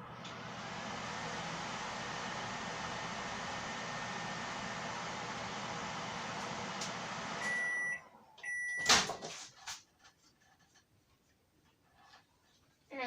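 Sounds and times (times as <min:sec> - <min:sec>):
microwave oven humming: 0:00.0 - 0:09.1
microwave beeps: 0:07.4 - 0:09.2.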